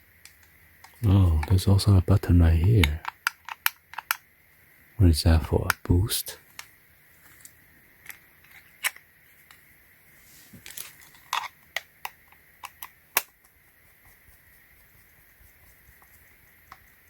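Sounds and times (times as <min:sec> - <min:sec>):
plastic clicks and taps: 0:02.8 - 0:04.2.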